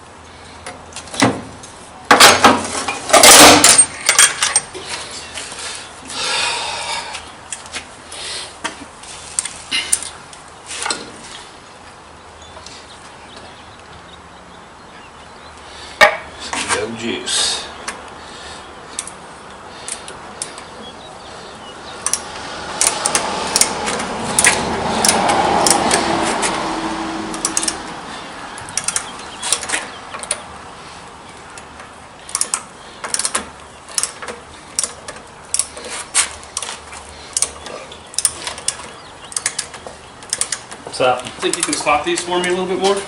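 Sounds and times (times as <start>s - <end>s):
mechanical clicking and ratcheting: 22.0s - 26.2s, 27.3s - 27.9s, 28.6s - 30.4s, 31.6s - 35.9s, 36.5s - 40.8s.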